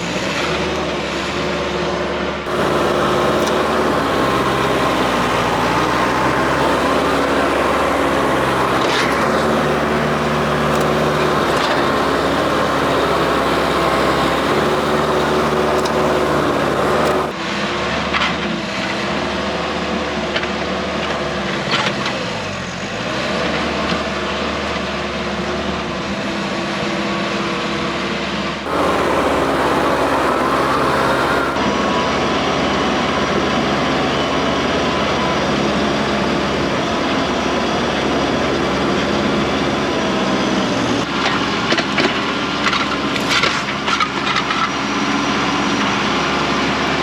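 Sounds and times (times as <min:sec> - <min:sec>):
tractor diesel engine under load: 0:02.5 - 0:17.4, 0:28.7 - 0:31.6.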